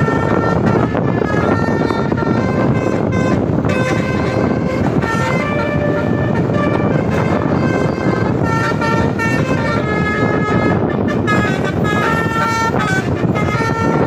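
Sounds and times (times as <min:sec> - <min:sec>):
bus and road noise: 0:00.0 - 0:14.0
musical air horn: 0:00.0 - 0:14.0.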